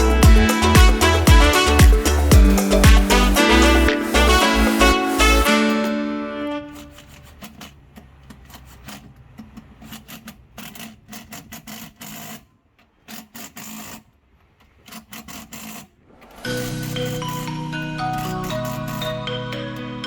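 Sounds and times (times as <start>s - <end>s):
loud background music: 0.0s - 6.8s, 16.5s - 20.0s
hand scrubbing: 0.0s - 7.2s.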